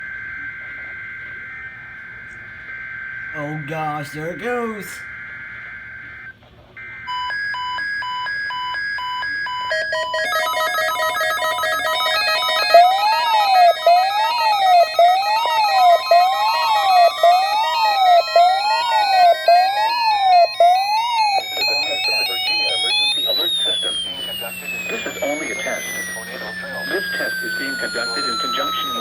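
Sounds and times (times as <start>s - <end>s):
warbling alarm: 0.0s - 29.0s
buzzing data bursts: 10.3s - 29.0s.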